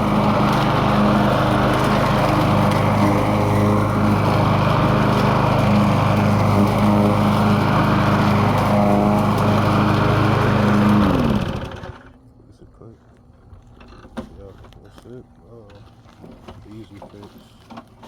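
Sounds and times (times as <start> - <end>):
lawn mower engine running: 0.0 - 12.2.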